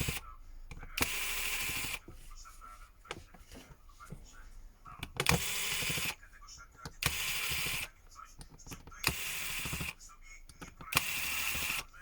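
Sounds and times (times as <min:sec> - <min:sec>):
electric screwdriver running: 0:00.0 - 0:00.2, 0:01.0 - 0:02.0, 0:05.2 - 0:06.2, 0:07.0 - 0:07.9, 0:09.0 - 0:10.0, 0:10.9 - 0:11.9.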